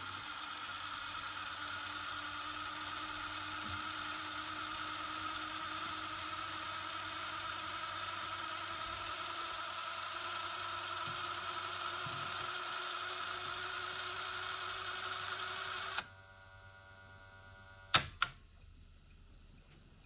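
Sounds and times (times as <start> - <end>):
sharp mechanical clicks: 15.2 - 16.1, 17.9 - 18.4.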